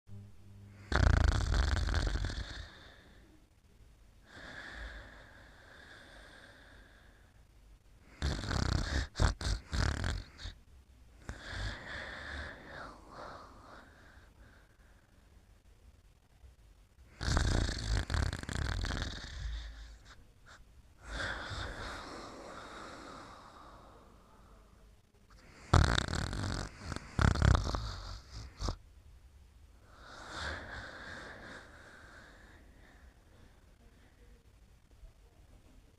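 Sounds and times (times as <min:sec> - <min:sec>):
loud snore: 0:00.7 - 0:03.1, 0:08.1 - 0:10.6, 0:11.2 - 0:13.9, 0:17.1 - 0:20.2, 0:21.0 - 0:23.6, 0:25.4 - 0:28.8, 0:29.9 - 0:32.7.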